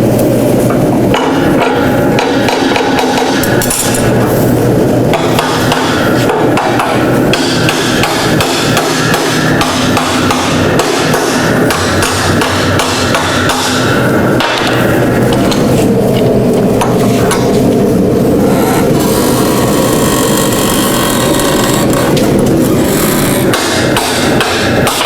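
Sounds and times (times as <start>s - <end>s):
steady background noise: 0.0s - 25.0s
hammer striking hot steel: 1.1s - 4.3s, 5.1s - 15.7s, 21.0s - 25.0s.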